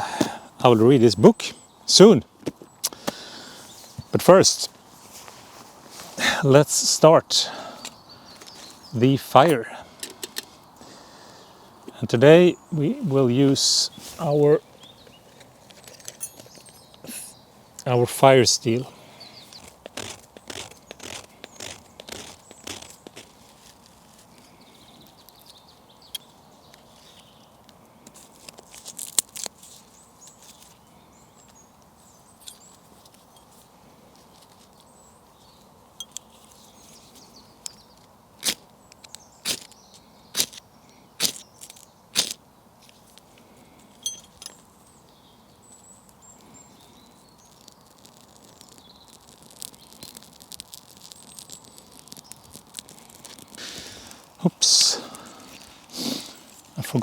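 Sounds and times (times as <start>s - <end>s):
campfire crackling: 2.4s - 57.0s
fire steel scraping: 18.6s - 24.5s.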